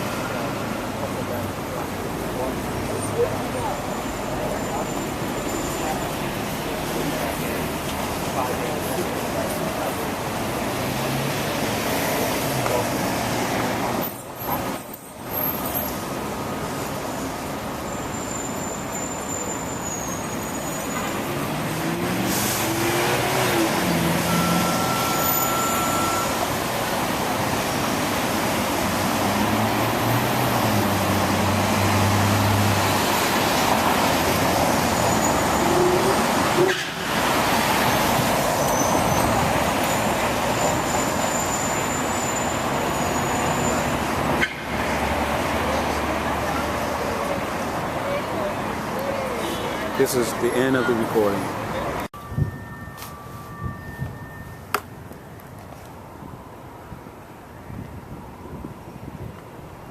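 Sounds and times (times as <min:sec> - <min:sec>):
city traffic rumble: 0:00.0 - 0:59.9
vehicle engines: 0:00.0 - 0:59.9
steady high tone: 0:24.2 - 0:26.5, 0:52.1 - 0:55.6.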